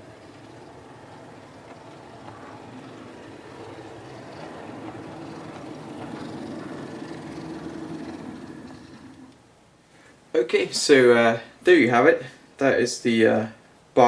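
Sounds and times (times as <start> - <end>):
electric motor hum: 0.0 - 9.5
wheel and rail rumble: 0.0 - 9.5.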